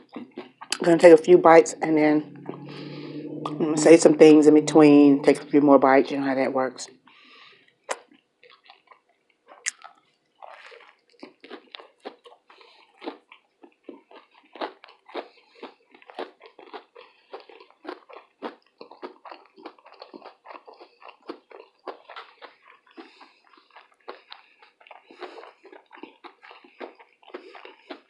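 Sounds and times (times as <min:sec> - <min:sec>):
person chewing food: 0:00.0 - 0:01.3, 0:06.9 - 0:28.0.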